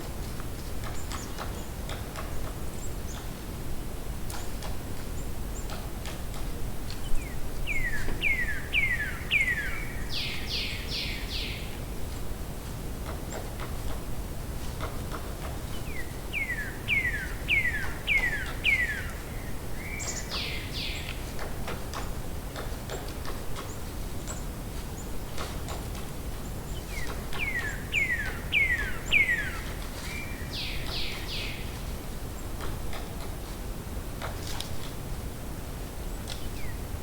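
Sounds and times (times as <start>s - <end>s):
low outdoor background noise: 0.0s - 37.0s
songbird singing: 6.9s - 11.9s, 15.6s - 33.3s, 36.1s - 37.0s.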